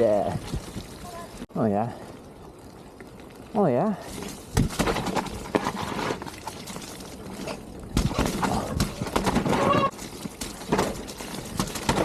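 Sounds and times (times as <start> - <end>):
bike tyres through water and mud: 0.0 - 12.0
bike knocking and rattling: 4.5 - 12.0.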